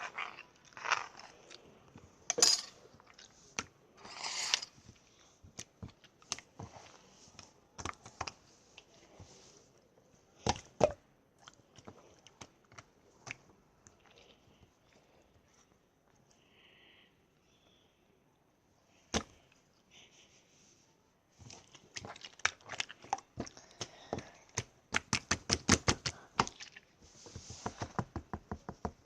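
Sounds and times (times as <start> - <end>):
hands squishing slime: 5.1 - 9.5, 21.4 - 28.3.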